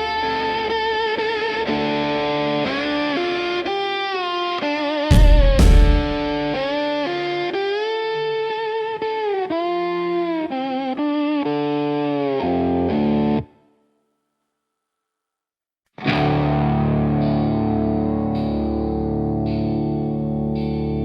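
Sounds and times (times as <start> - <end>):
low bass note: 5.1 - 6.5
electric guitar lead with vibrato: 16.0 - 21.0.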